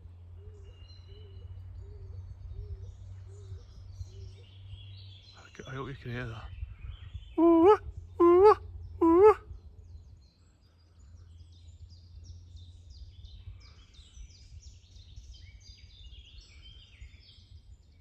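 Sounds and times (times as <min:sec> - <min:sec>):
faint songbird chirping: 0:00.2 - 0:18.0
man making hooting calls: 0:07.4 - 0:09.4.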